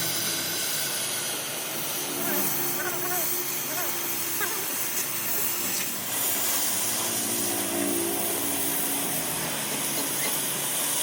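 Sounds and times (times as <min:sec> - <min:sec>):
power tool running with hiss: 0:00.0 - 0:11.0.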